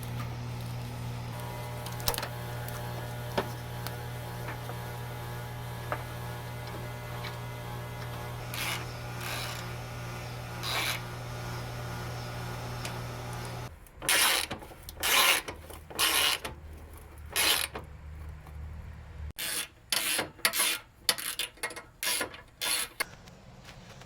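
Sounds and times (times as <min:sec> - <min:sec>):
low electrical hum: 0:00.0 - 0:14.0
plastic parts scraping: 0:13.9 - 0:18.6.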